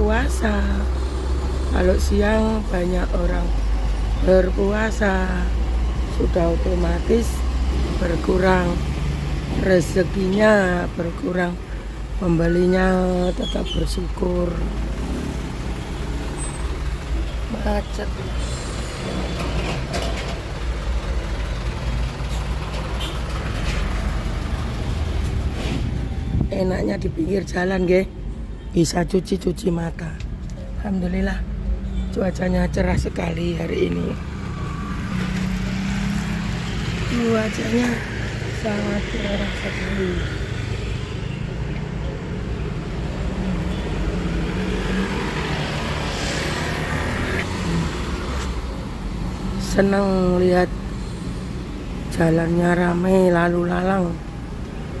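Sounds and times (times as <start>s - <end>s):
traffic engines rumbling: 0.0s - 55.0s
passing vehicle tyre noise: 13.3s - 27.2s, 31.4s - 53.2s.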